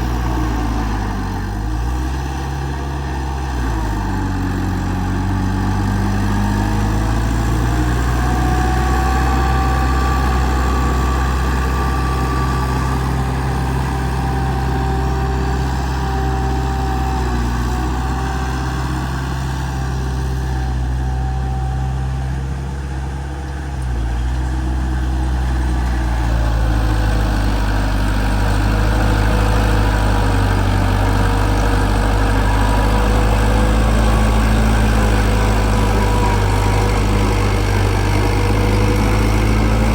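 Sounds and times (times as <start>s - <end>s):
diesel machinery engine drone: 0.0s - 39.9s.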